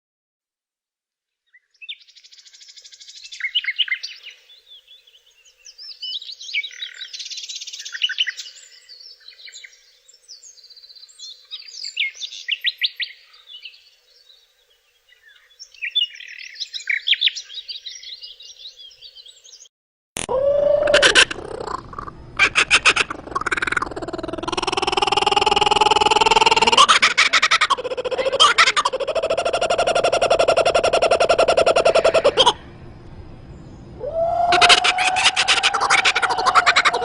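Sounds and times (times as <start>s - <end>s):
songbird singing buzzy phrases: 20.6s - 27.0s, 27.7s - 37.0s.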